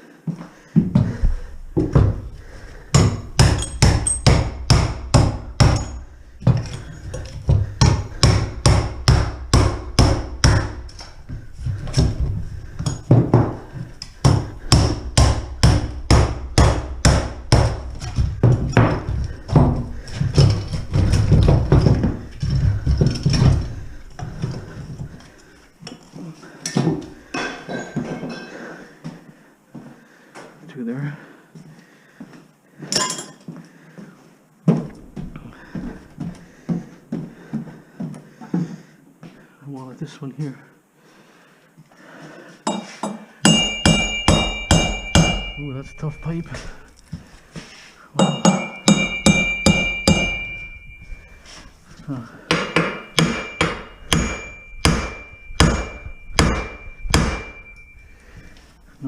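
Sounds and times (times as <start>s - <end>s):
hammer striking metal pipe: 2.9s - 6.7s, 42.7s - 46.6s, 48.2s - 51.3s, 52.5s - 58.2s.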